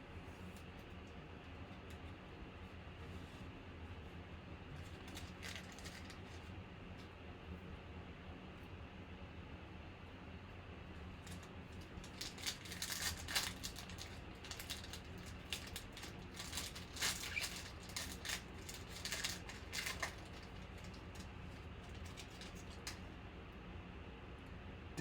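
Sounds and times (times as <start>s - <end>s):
low steady hum: 0.0s - 25.0s
cards and wrappers rustling: 4.8s - 6.4s, 11.2s - 23.0s.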